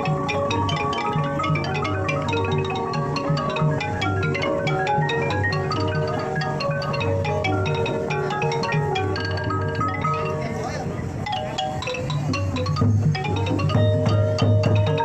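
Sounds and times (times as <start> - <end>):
mallet instrument rapid runs: 0.0 - 15.0.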